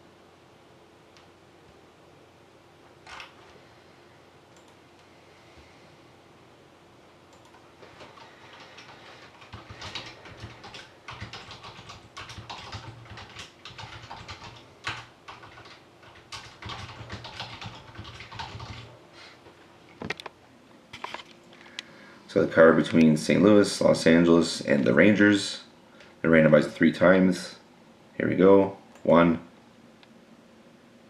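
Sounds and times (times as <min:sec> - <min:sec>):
computer keyboard typing: 0:03.0 - 0:03.4, 0:07.3 - 0:18.9.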